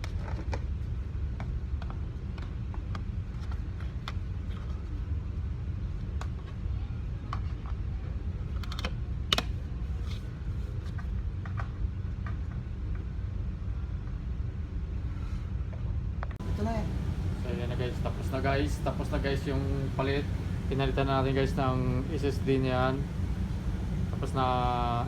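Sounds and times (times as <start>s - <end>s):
steady low rumble: 16.4s - 25.0s.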